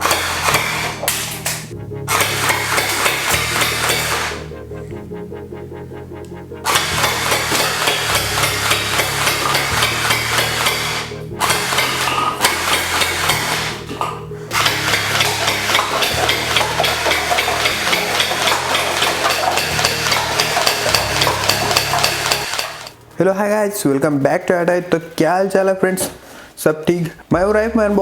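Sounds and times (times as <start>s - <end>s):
toy rifle firing rapid clacks: 0.0s - 4.5s, 6.7s - 22.9s
background music with bass: 0.0s - 25.4s, 27.3s - 28.0s.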